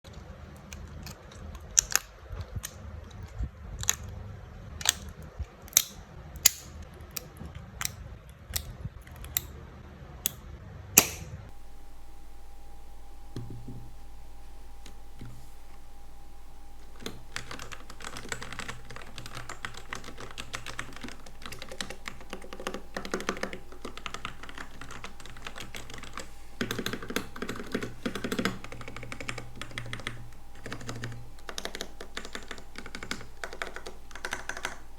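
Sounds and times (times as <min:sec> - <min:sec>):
faint steady tone: 0:11.5 - 0:34.9
continuous typing: 0:13.3 - 0:34.9.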